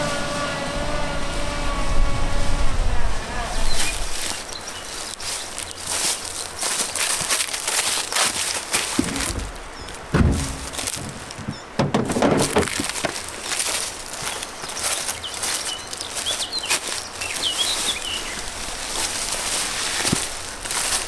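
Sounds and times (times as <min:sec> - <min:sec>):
heavy footsteps or knocks: 0:08.8 - 0:13.4.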